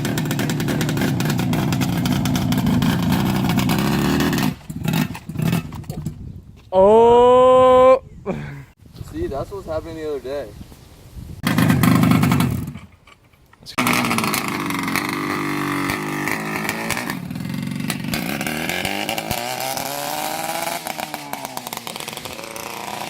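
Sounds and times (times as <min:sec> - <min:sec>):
two-stroke motorcycle engine revving: 0:00.0 - 0:06.0, 0:11.4 - 0:12.9, 0:13.8 - 0:23.0.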